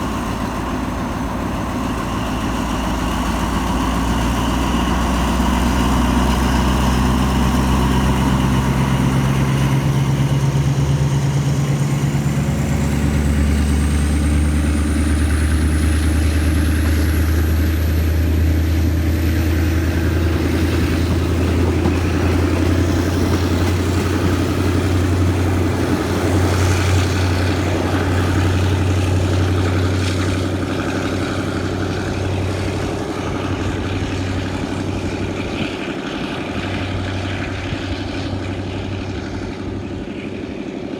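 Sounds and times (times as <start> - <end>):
locomotive engine droning: 0.0 - 40.9.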